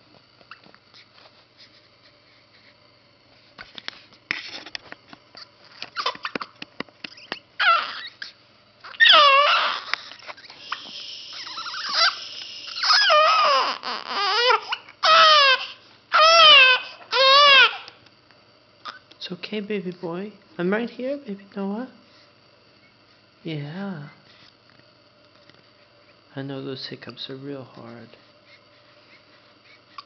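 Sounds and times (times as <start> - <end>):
baby crying: 7.2 - 18.0.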